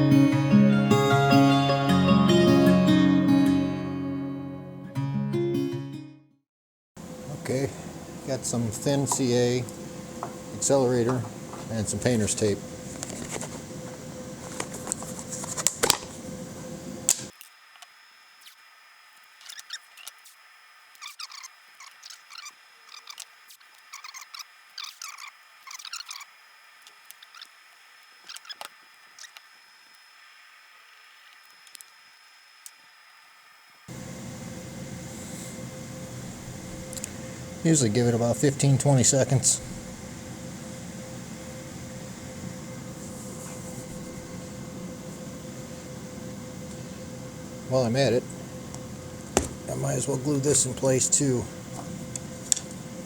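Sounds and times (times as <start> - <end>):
fan hum: 7.0 - 17.3, 33.9 - 53.0
high crackly squeaks: 19.3 - 20.3, 21.0 - 27.6, 28.2 - 29.5.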